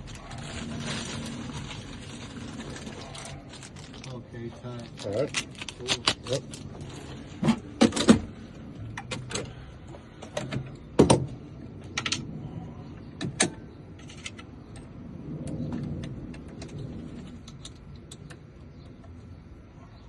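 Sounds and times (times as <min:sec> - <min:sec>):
soft low rumble: 0:00.0 - 0:05.7.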